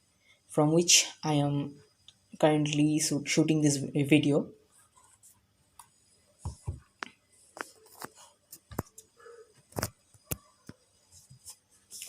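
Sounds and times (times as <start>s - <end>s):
audio cable clicks and knocks: 6.5s - 9.1s.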